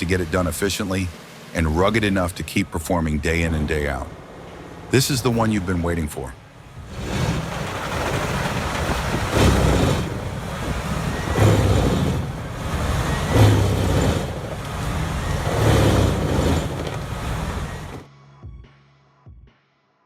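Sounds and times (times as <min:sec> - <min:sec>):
heavy machinery running: 0:06.4 - 0:18.1.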